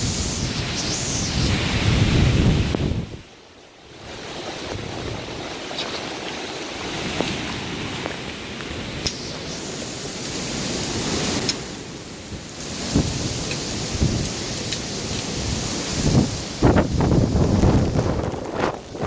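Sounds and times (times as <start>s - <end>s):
strong wind buffeting microphone: 0.0s - 3.3s, 12.3s - 19.0s.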